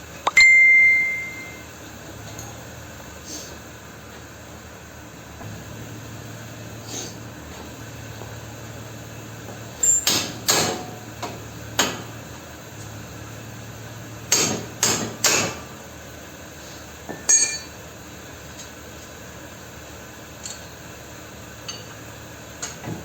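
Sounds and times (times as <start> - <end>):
hammer striking metal: 0.3 - 1.6, 17.3 - 17.7.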